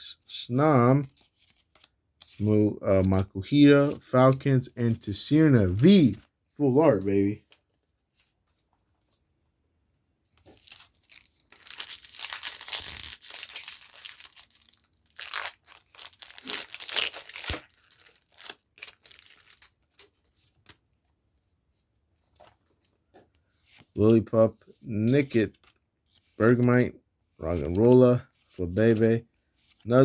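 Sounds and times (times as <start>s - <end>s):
foil wrapper ripping and crinkling: 10.5s - 20.0s.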